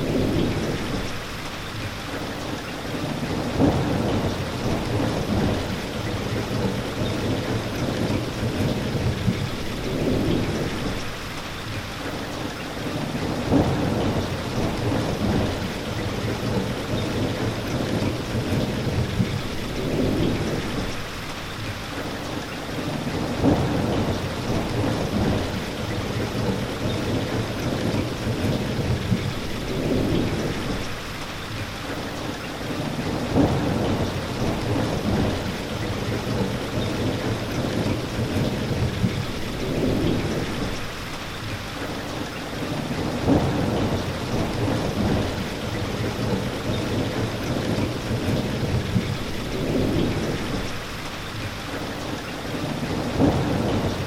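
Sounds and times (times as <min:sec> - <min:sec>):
steady rain falling: 0:00.0 - 0:54.0
thunder rolling: 0:33.0 - 0:41.0, 0:42.9 - 0:50.9, 0:52.8 - 0:54.0.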